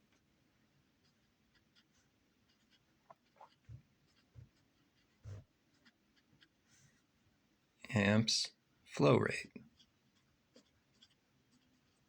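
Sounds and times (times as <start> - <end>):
writing squeaks: 1.0 - 6.9, 9.8 - 12.0.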